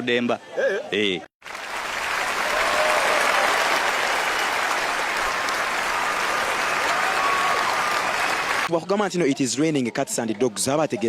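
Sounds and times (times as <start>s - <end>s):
crowd clapping: 1.4s - 8.7s.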